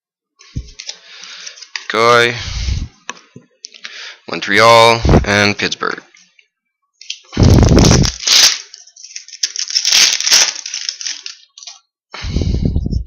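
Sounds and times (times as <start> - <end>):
foil wrapper tearing and crinkling: 7.1 - 11.8.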